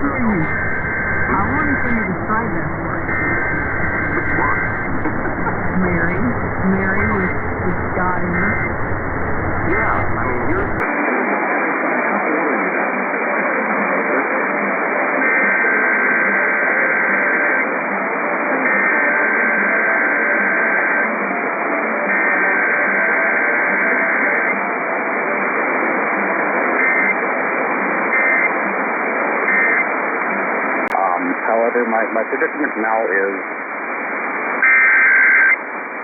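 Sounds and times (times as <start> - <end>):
radio static: 0.0 - 12.9, 26.4 - 36.0.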